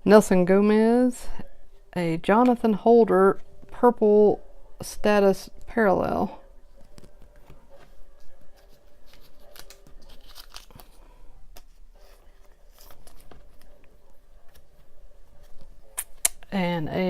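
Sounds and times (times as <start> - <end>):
trading cards flipped through: 8.6 - 13.8.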